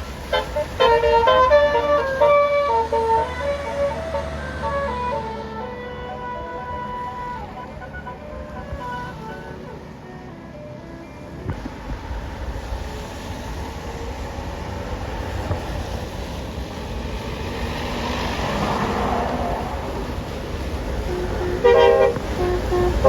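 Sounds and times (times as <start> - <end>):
bus engine and road noise: 0.0 - 23.0
bus horn playing stepped notes: 0.2 - 11.6, 21.0 - 23.0.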